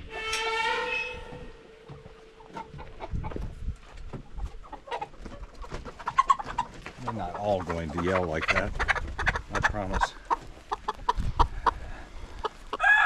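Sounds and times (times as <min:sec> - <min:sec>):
chicken distress squawk: 0:12.7 - 0:13.0.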